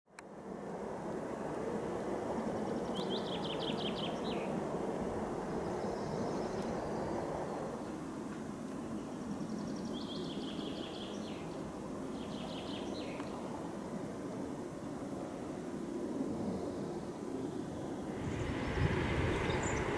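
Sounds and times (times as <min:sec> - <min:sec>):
low background rumble: 0:18.1 - 0:19.9.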